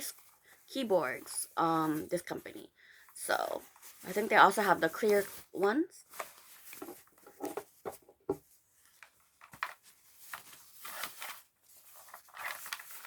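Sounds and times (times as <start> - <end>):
packaging rustling and crinkling: 3.6 - 13.0.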